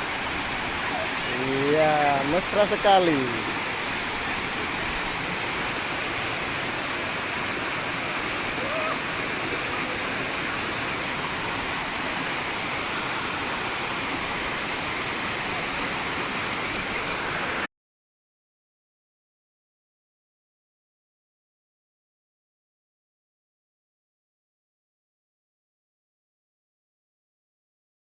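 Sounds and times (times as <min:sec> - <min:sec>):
waterfall rushing: 0:00.0 - 0:17.7.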